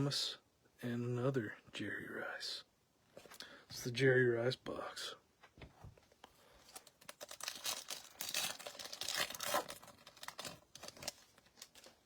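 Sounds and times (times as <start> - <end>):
plastic wrapper crackling: 6.7 - 12.0.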